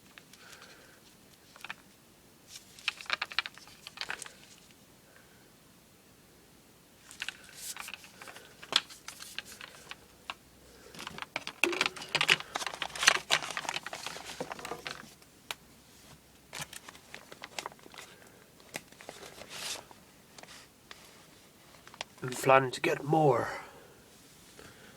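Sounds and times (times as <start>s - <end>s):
packaging crinkling: 2.5s - 4.6s, 7.0s - 10.0s, 10.9s - 15.2s, 16.5s - 19.9s.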